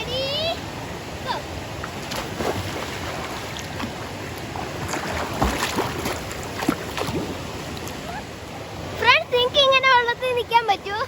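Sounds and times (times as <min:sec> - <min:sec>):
flowing water rushing: 0:00.0 - 0:11.0
water splashing: 0:01.3 - 0:09.2.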